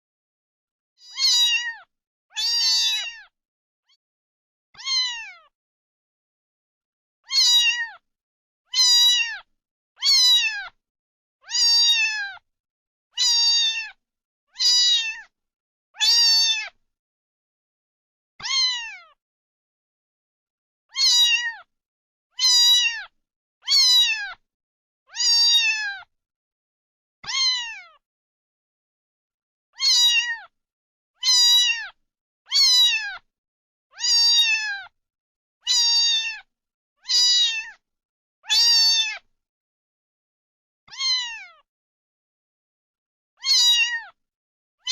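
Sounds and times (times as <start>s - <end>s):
cat meowing: 1.0s - 4.0s, 4.8s - 5.5s, 7.2s - 8.0s, 8.7s - 10.8s, 11.4s - 12.4s, 13.2s - 14.0s, 14.6s - 15.3s, 16.0s - 16.8s, 18.4s - 19.2s, 20.9s - 21.7s, 22.3s - 24.4s, 25.1s - 26.1s, 27.2s - 28.0s, 29.8s - 30.5s, 31.2s - 33.2s, 33.9s - 34.9s, 35.7s - 37.8s, 38.4s - 39.2s, 40.9s - 41.6s, 43.4s - 44.2s.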